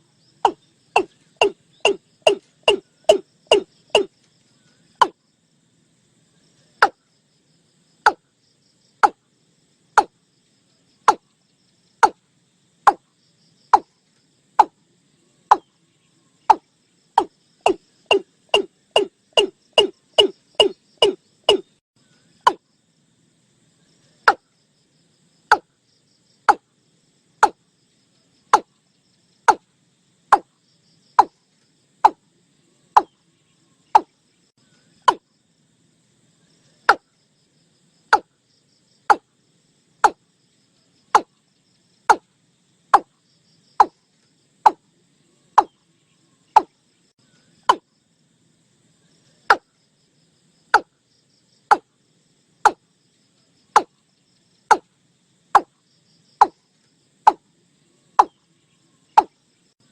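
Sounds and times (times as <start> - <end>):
bird calling sharp notes: 0.4 - 4.1, 16.5 - 21.7.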